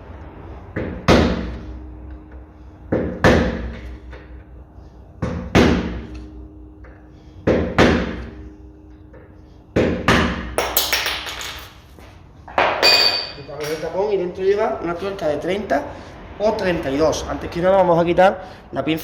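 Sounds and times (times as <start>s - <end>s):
hammer striking metal: 12.6s - 13.9s.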